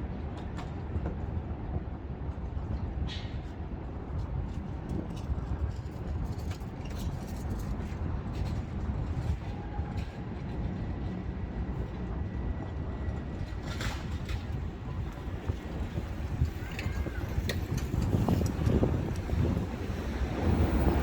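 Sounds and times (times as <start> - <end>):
road traffic rumble: 7.6 - 21.0.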